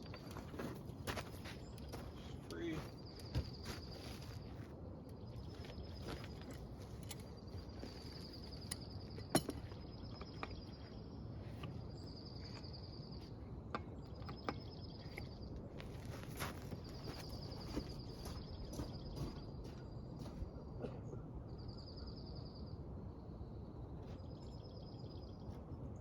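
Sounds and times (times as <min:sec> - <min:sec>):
insects trilling: 0:00.0 - 0:13.4
outdoor background noise: 0:00.0 - 0:26.0.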